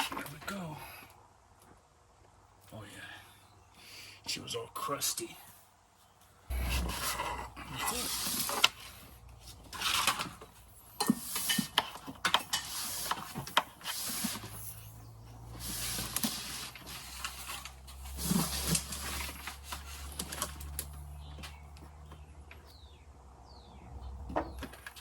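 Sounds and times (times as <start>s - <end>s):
cable rubbing and sliding: 6.5s - 21.0s.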